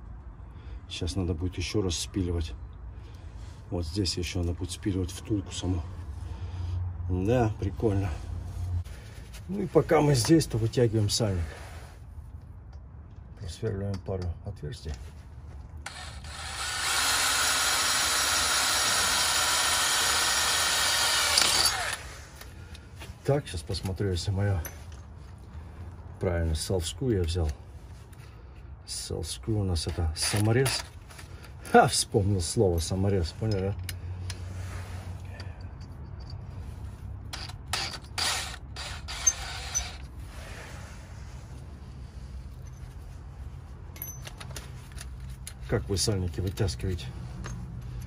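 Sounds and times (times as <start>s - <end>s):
electric drill boring into metal: 15.8s - 22.1s, 37.4s - 40.0s
metal tools rattling and scraping: 35.2s - 38.2s, 42.4s - 43.1s, 43.9s - 46.7s.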